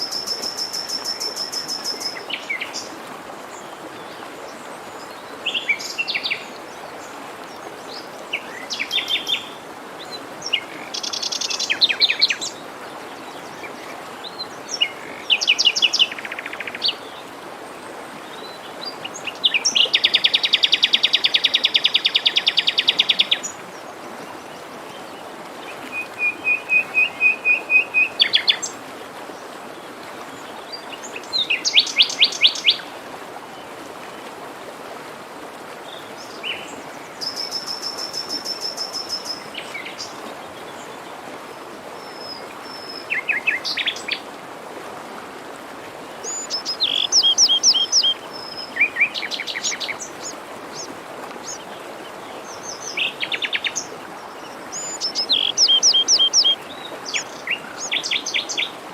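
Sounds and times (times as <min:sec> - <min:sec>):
forest stream rushing: 0:00.0 - 0:58.9
songbirds singing: 0:46.2 - 0:58.8.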